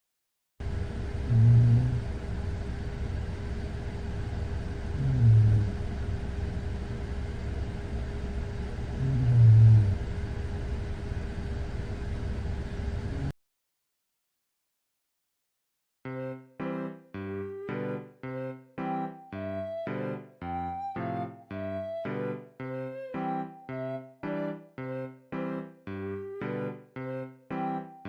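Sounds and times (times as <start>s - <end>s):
steady background hum: 0.6s - 13.3s
woman snoring: 1.3s - 2.0s, 5.0s - 5.8s, 9.0s - 10.0s.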